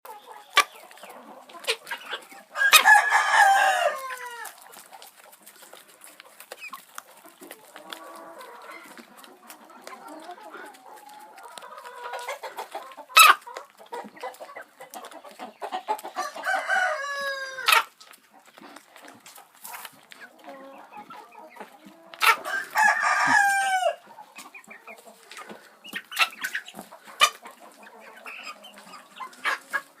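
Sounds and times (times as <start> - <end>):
chicken crowing calls: 2.6 - 4.6, 16.2 - 17.8, 22.2 - 24.0.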